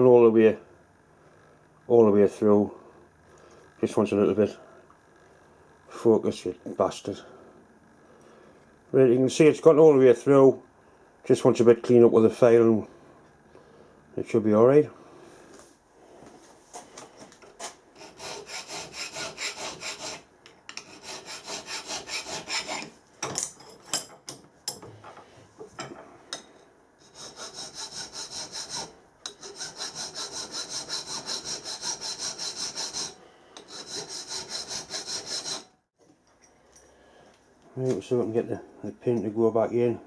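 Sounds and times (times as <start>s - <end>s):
hand file rasping on metal: 17.6s - 22.9s, 27.0s - 35.7s.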